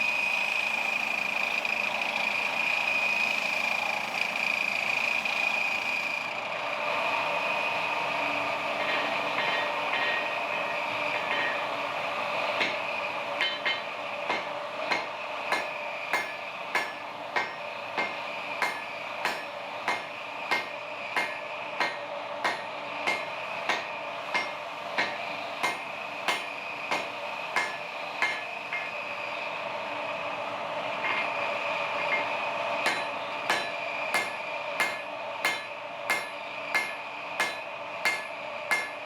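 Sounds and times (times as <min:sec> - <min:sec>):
hammer striking steel on anvil: 0:08.8 - 0:11.8, 0:12.6 - 0:29.0, 0:31.0 - 0:39.0.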